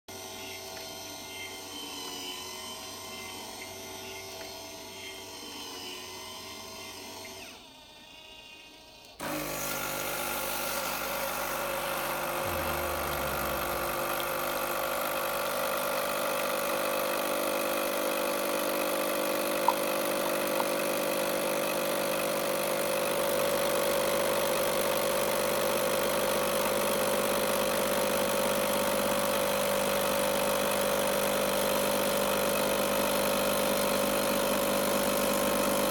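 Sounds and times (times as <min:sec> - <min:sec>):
motor-driven machine droning: 0:00.1 - 0:35.9
steady mechanical hum: 0:11.2 - 0:15.2.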